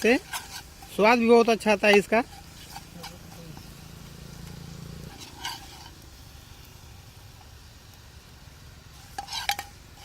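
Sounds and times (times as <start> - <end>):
spoon knocking and scraping pan: 0.0 - 6.0, 9.0 - 10.0
mixture sizzling in a pan: 0.0 - 10.0.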